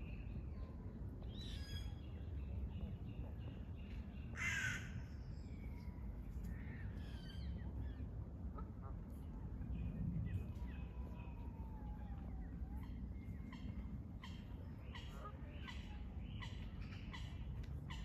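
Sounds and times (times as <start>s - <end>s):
steady low rumble: 0.0s - 18.0s
birds calling: 3.9s - 5.0s, 12.1s - 18.0s.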